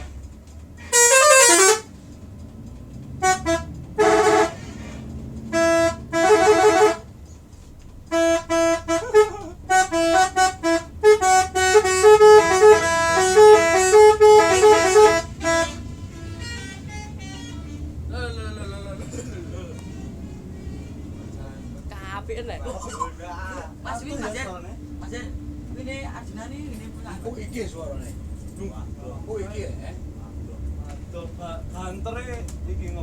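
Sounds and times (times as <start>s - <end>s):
multi-tone bus horn: 0.0s - 2.2s, 3.0s - 7.2s, 8.0s - 24.4s.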